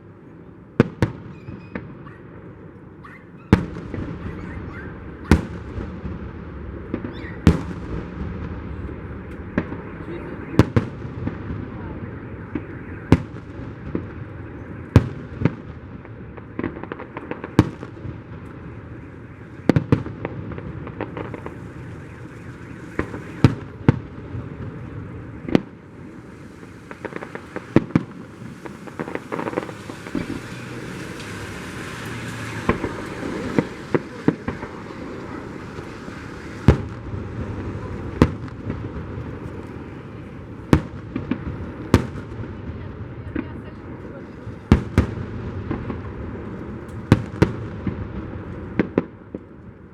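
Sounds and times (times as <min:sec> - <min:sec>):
fireworks crackling: 0:00.0 - 0:49.9
firework shells bursting: 0:16.4 - 0:42.5.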